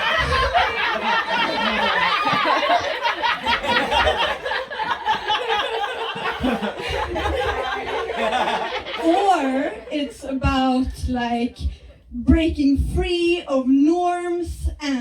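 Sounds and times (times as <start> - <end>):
audience laughing softly: 0.0 - 10.1.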